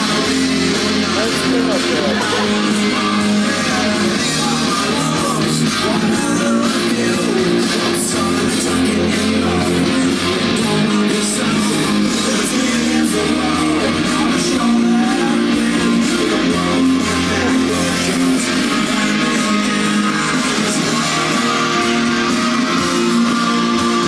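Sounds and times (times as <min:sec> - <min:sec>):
guitar music: 0:00.0 - 0:24.0.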